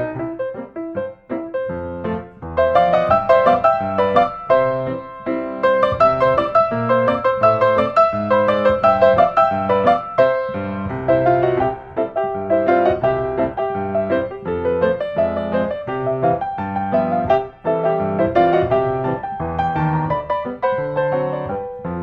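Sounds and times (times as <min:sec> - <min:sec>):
piano music: 0:00.0 - 0:22.0.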